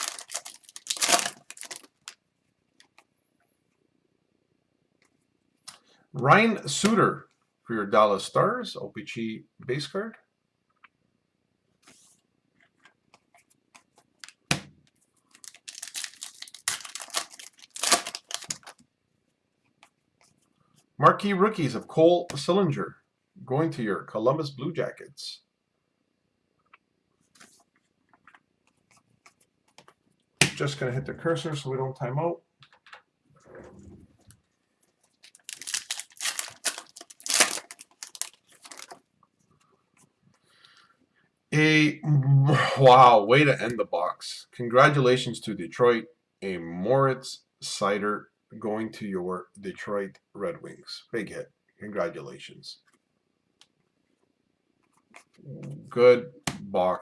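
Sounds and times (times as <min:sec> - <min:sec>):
cards sliding and rustling: 0:00.0 - 0:02.2, 0:15.4 - 0:18.8
wrapper crinkling and tearing: 0:00.0 - 0:02.2, 0:15.3 - 0:18.8, 0:35.2 - 0:39.0
cards clicking: 0:15.4 - 0:18.7.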